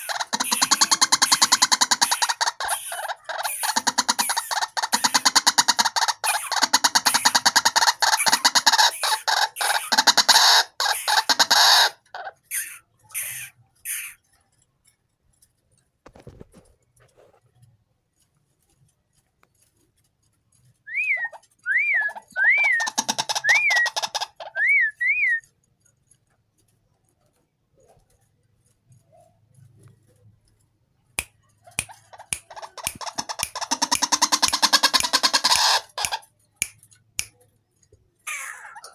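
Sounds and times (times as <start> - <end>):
waterhen harsh calls: 0.0 - 14.2, 32.4 - 36.2.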